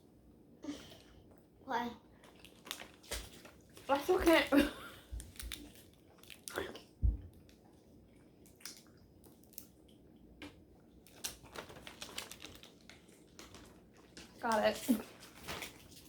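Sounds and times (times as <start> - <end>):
person chewing a snack: 2.2 - 3.1, 5.2 - 14.4
low thump: 7.0 - 7.3.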